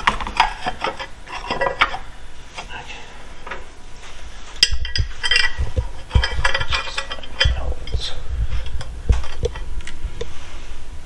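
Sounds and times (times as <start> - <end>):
metal tools clinking: 4.6 - 10.0
low thumps: 4.6 - 11.0.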